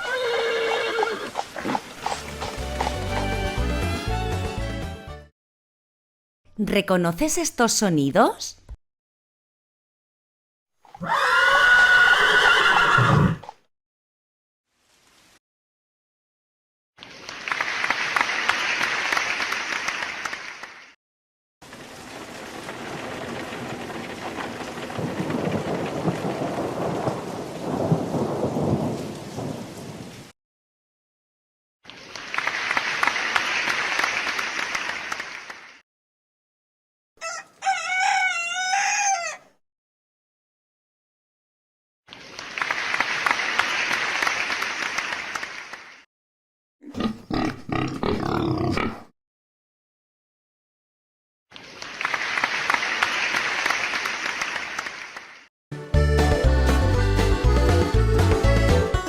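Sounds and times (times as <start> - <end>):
rain falling: 0.4 - 3.8, 14.7 - 15.4, 21.6 - 30.3
thunder rumbling: 22.1 - 30.2
rooster crowing: 37.2 - 39.5.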